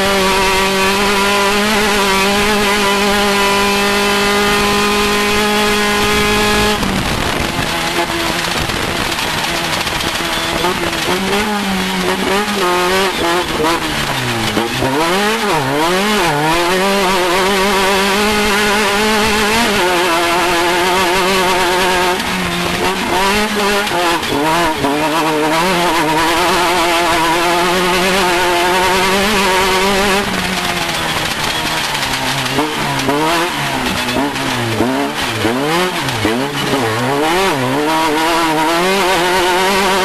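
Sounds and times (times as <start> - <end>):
engine revving under throttle: 0.0 - 40.0.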